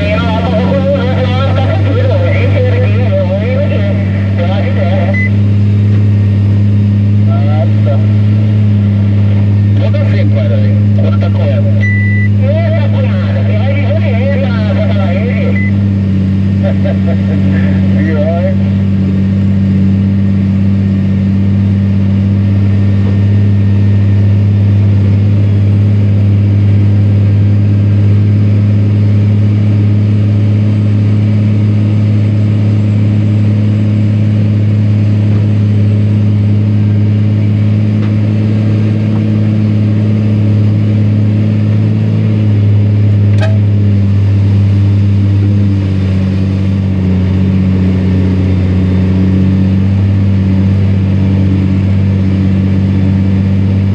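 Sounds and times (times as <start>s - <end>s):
diesel truck engine labouring: 0.0s - 53.9s
short click: 43.3s - 43.6s.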